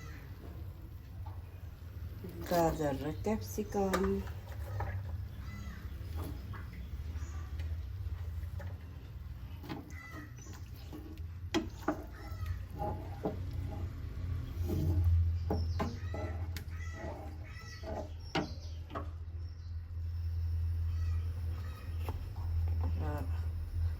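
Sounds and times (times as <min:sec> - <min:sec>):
animal or bird calls: 0:00.0 - 0:00.6, 0:04.5 - 0:07.7, 0:09.4 - 0:13.8, 0:14.5 - 0:19.8, 0:20.8 - 0:23.4
utensil stirring in pan: 0:00.0 - 0:19.2
low hum: 0:00.0 - 0:23.9.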